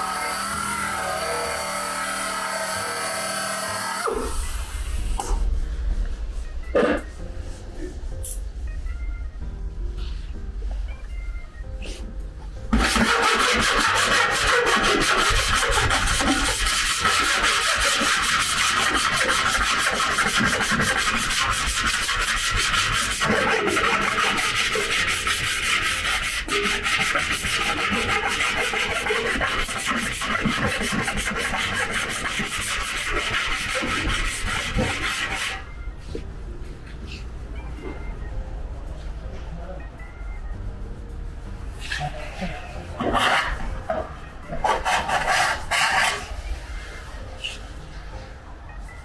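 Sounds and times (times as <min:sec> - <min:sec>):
sanding body panel: 0:12.7 - 0:35.6.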